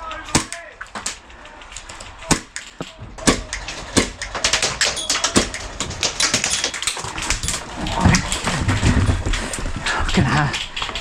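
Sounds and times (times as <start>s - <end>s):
airsoft gun clicking shots: 0.3s - 7.0s.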